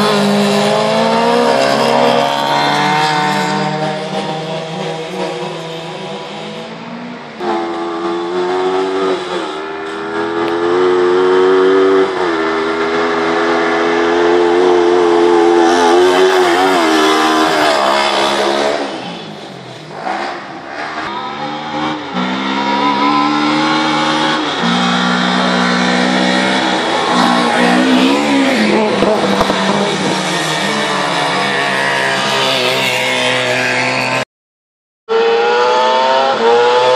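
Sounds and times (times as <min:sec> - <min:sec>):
car engines revving hard: 0:00.0 - 0:34.2, 0:35.1 - 0:36.9.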